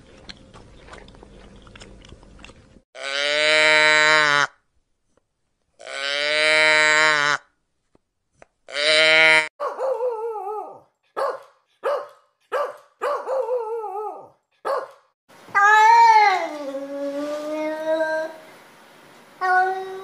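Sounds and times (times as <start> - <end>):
dog barking: 9.6 - 10.1, 11.1 - 15.1
dog howling: 9.6 - 10.9, 13.0 - 14.4.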